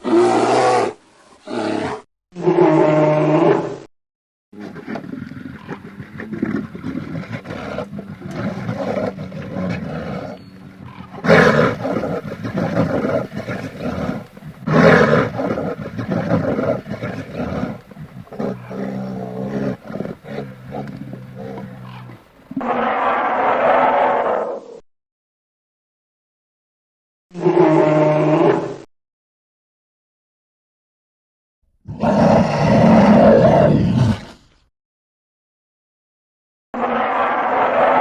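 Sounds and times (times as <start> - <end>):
polar bear growling and roaring: 4.6 - 24.8, 27.4 - 28.9, 31.8 - 34.6, 36.8 - 38.0.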